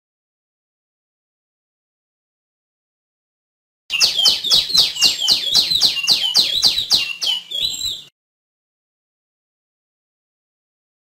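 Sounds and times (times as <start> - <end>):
bird calling: 3.9 - 8.1.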